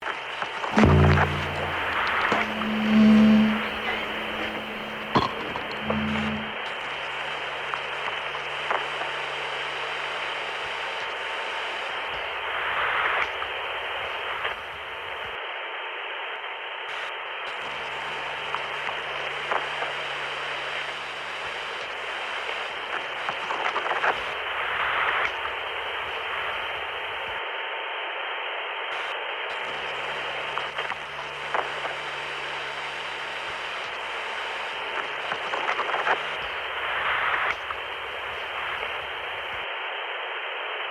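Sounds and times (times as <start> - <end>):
radio static buzz: 0.8 - 9.9
low hum: 0.8 - 10.4.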